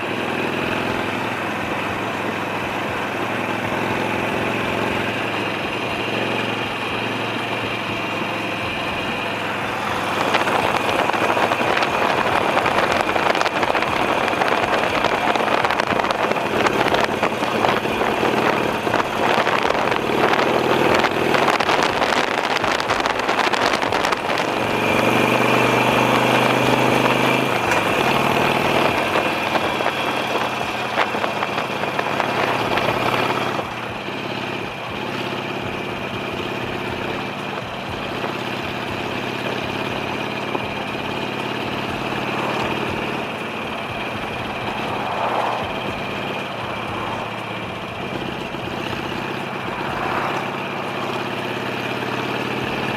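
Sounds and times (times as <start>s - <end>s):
motorcycle engine: 0.0s - 52.9s
wind noise: 9.7s - 26.2s, 27.0s - 34.0s, 43.9s - 47.3s.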